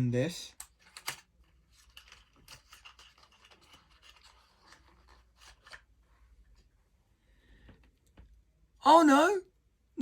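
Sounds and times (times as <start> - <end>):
packaging scratching and rustling: 0.8 - 6.0.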